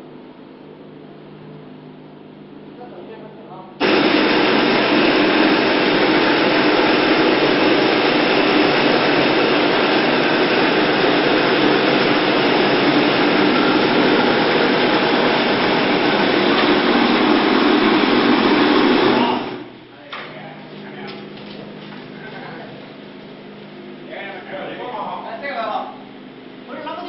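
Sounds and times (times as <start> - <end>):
loud steady machine noise: 3.8 - 20.0.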